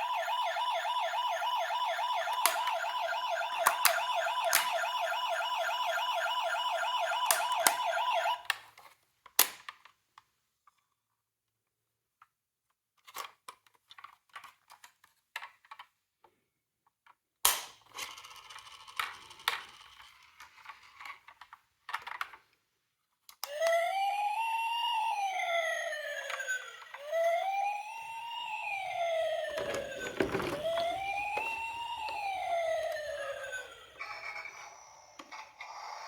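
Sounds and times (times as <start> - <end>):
toy siren wailing: 0.0 - 8.5, 23.4 - 35.8
plastic toy cars clicking: 8.4 - 11.1, 12.2 - 22.6, 29.6 - 32.2.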